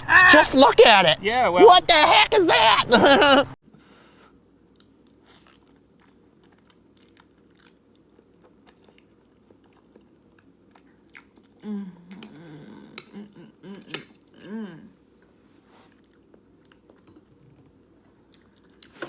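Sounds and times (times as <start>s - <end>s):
close-up chewing of noodles: 4.6s - 12.7s, 15.9s - 19.0s.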